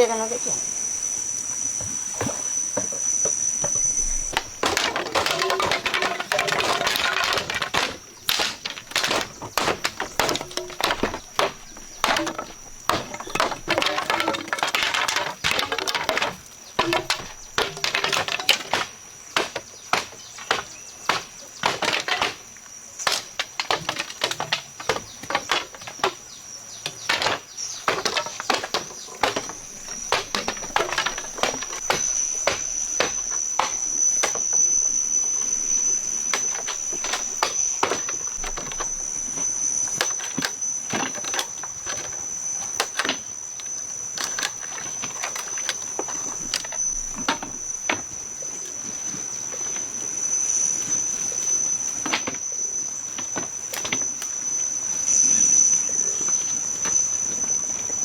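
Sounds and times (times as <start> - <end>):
blade chopping knocks: 1.8 - 26.3, 26.9 - 42.1.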